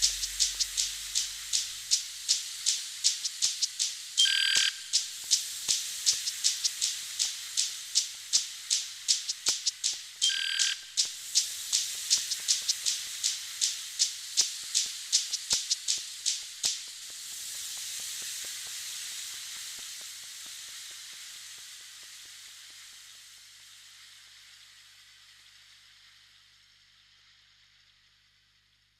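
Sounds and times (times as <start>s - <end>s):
hissing noise wash: 0.0s - 4.2s
high percussion clicks: 0.0s - 18.7s.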